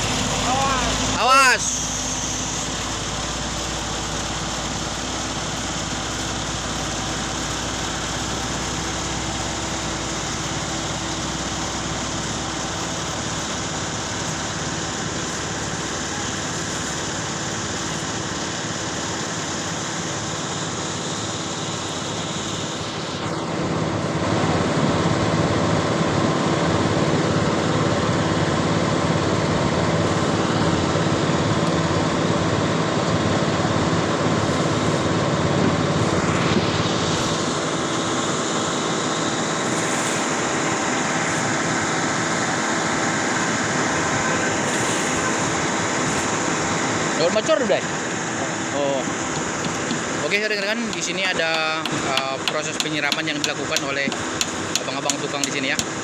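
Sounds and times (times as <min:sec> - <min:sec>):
heavy machinery engine running: 0:00.0 - 0:56.0.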